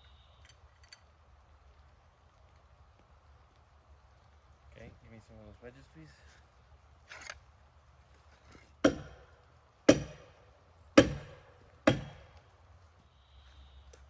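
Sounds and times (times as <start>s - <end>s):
maul striking metal wedge: 8.8s - 9.2s, 9.9s - 10.4s, 11.0s - 12.3s.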